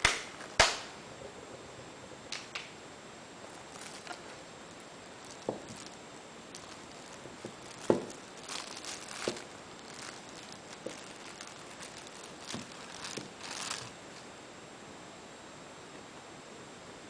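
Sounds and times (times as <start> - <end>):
packaging rustling: 3.4 - 14.0.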